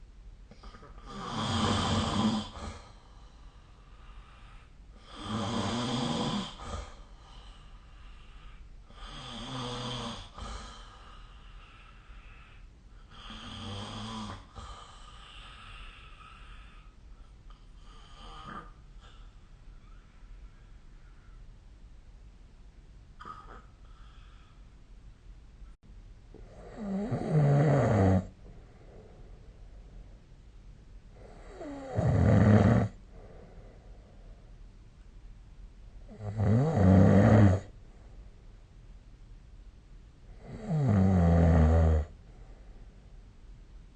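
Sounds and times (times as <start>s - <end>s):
person snoring: 0.6s - 3.0s, 5.0s - 7.0s, 8.9s - 16.9s, 26.5s - 28.3s, 31.2s - 33.6s, 36.1s - 37.7s, 40.4s - 42.2s.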